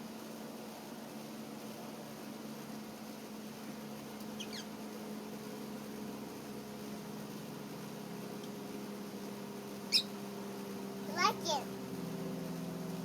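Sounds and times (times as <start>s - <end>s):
lovebird chirping: 4.4s - 4.7s, 9.9s - 10.1s.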